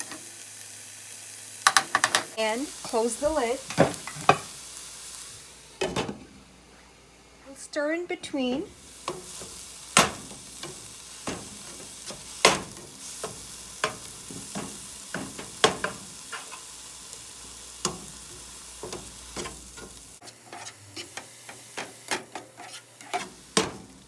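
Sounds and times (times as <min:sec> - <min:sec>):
spinach sizzling in hot oil: 0:00.0 - 0:06.2, 0:07.5 - 0:24.0
utensil scraping and tapping pan: 0:02.9 - 0:04.5, 0:08.3 - 0:16.7, 0:17.4 - 0:23.9.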